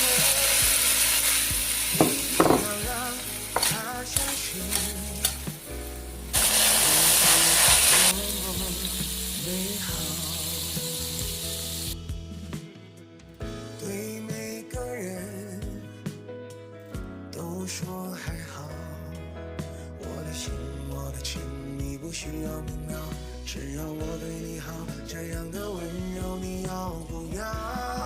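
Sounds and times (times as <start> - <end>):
food sizzling in hot oil: 0.0 - 12.0
faint song playing: 0.0 - 19.3, 20.0 - 28.0.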